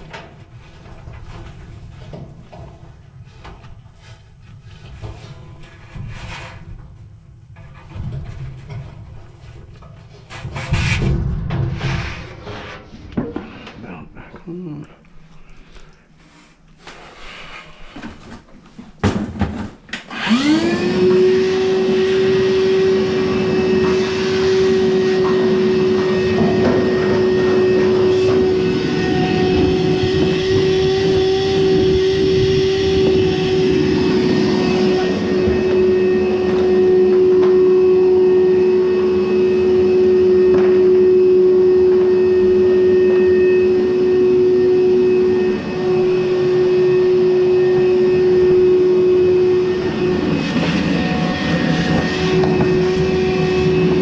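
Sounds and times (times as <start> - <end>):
electric motor whining: 20.1 - 54.0.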